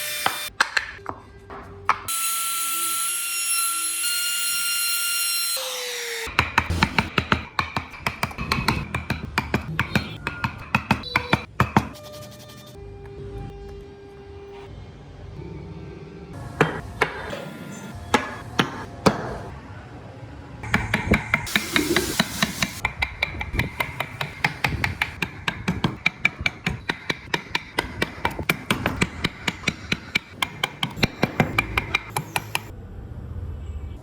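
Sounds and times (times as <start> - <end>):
mallet tapping chisel: 6.3 - 11.9, 20.7 - 32.7
tools striking wood: 6.3 - 11.9, 20.7 - 32.7.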